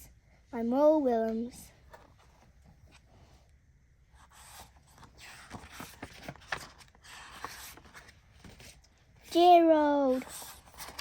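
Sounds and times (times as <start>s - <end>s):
book pages rustling: 4.2s - 11.0s.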